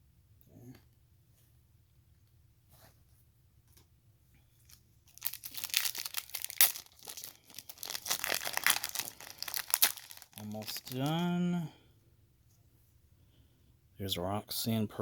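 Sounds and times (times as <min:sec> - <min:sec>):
plastic wrapper crinkling and tearing: 0:04.6 - 0:11.3.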